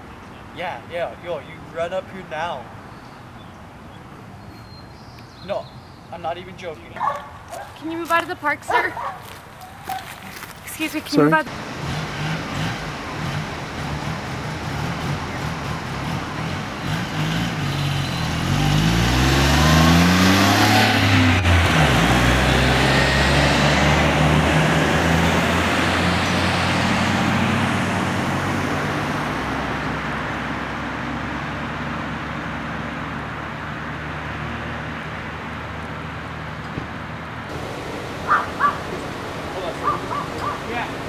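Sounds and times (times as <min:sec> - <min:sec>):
vehicle engine accelerating: 0:11.2 - 0:41.0.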